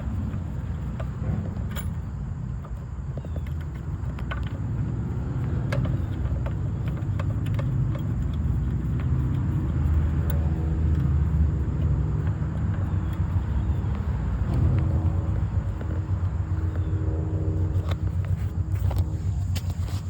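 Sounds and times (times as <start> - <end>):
low engine rumble: 0.0 - 20.0
light clicks and taps: 0.3 - 15.0.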